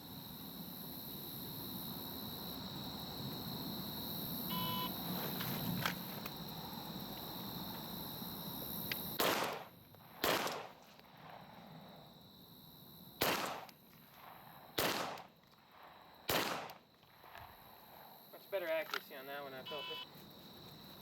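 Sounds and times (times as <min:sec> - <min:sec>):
pistol shots: 0:09.2 - 0:10.8, 0:13.2 - 0:13.8, 0:14.8 - 0:15.3, 0:16.3 - 0:16.9.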